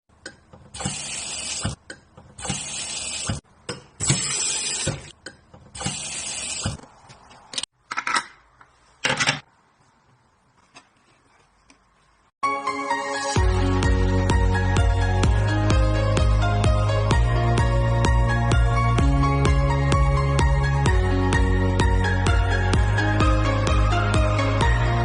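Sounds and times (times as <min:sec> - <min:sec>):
cup rinser water jet hissing: 0:00.8 - 0:01.8, 0:02.4 - 0:03.4, 0:04.0 - 0:05.1, 0:05.8 - 0:06.8.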